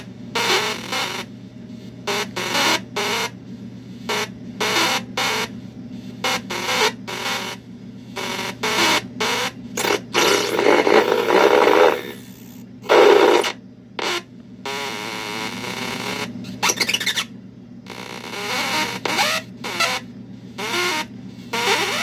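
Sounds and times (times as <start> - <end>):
steady low hum: 0.0 - 22.0
fast electronic stutter: 9.8 - 13.6
glitchy electronic noise bursts: 9.8 - 13.6.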